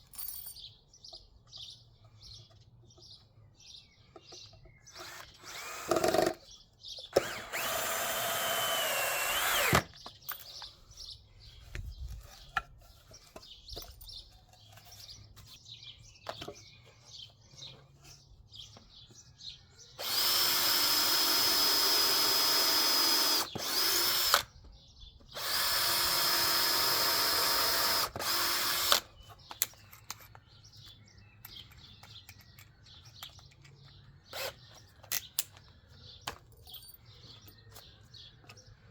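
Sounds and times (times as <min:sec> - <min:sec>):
faint birdsong: 0:00.0 - 0:38.9
power drill drilling into wood: 0:04.9 - 0:06.4, 0:07.1 - 0:09.9, 0:20.0 - 0:24.5, 0:25.4 - 0:29.1
small handling clicks: 0:28.9 - 0:34.1, 0:34.7 - 0:38.7.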